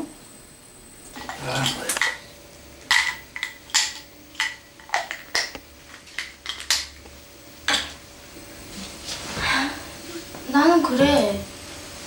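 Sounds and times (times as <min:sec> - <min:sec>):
sharp clicks and clinks: 0:02.9 - 0:07.0.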